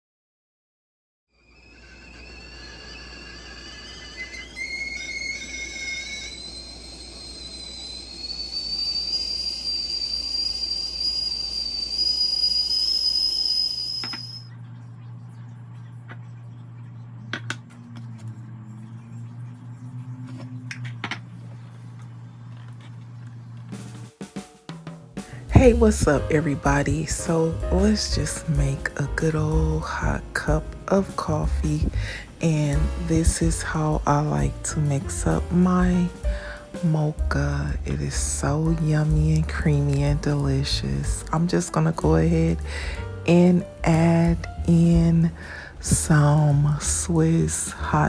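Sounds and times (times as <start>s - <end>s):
stovetop kettle whistling: 1.3s - 14.7s, 25.2s - 48.0s
low steady hum: 14.4s - 23.7s, 25.3s - 48.0s.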